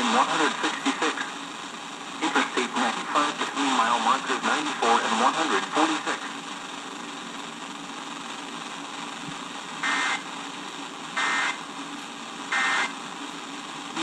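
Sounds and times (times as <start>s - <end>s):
radio hiss: 0.0s - 14.0s
electronic data bursts: 9.8s - 10.3s, 11.2s - 11.7s, 12.5s - 13.0s.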